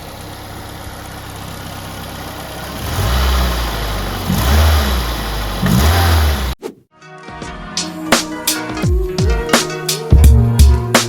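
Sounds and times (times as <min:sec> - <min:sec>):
car engine idling and revving: 0:00.0 - 0:06.6.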